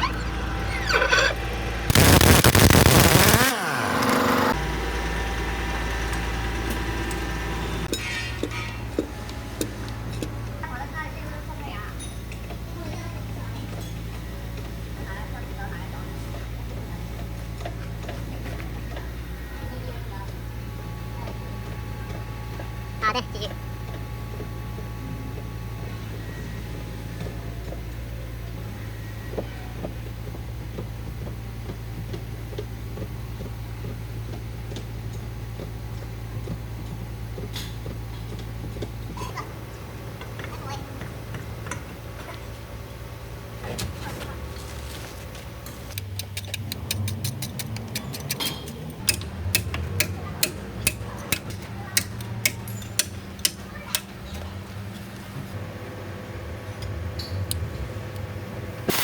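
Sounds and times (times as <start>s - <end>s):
machine humming: 0.0s - 7.9s.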